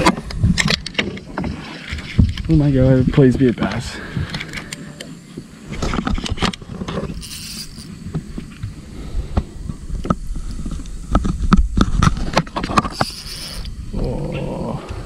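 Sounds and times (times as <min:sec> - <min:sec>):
wind rumble on microphone: 0:00.0 - 0:03.6
fishing gear knocks and clicks: 0:05.7 - 0:08.7
short hiss: 0:07.1 - 0:10.8, 0:12.8 - 0:13.8.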